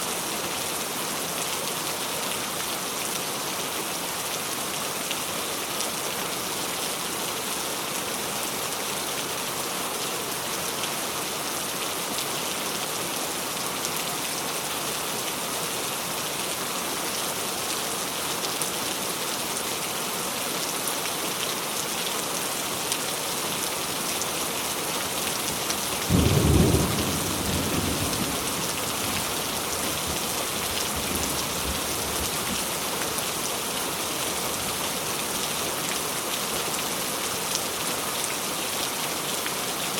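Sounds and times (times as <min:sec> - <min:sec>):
steady rain hiss: 0:00.0 - 0:39.9
thunder clap and rumble: 0:26.1 - 0:29.2.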